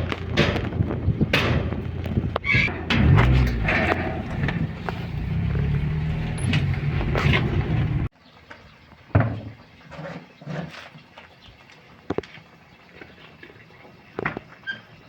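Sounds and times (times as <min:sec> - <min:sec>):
machine engine running: 0:00.0 - 0:08.1.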